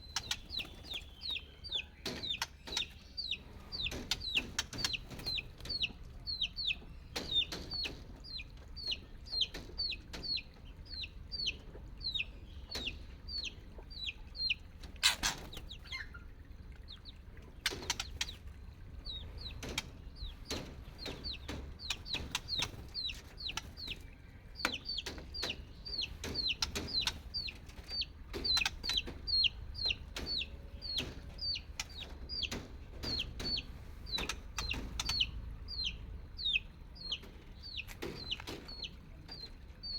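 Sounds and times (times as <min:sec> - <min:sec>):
chicks peeping: 0:00.0 - 0:39.9.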